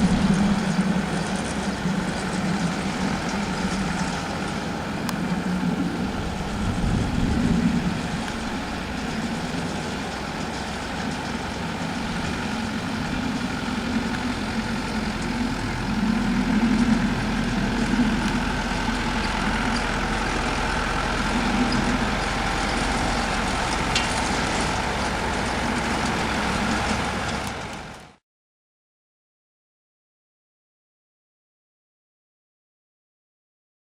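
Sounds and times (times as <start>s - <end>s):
engine running with low hum: 0.0s - 28.2s.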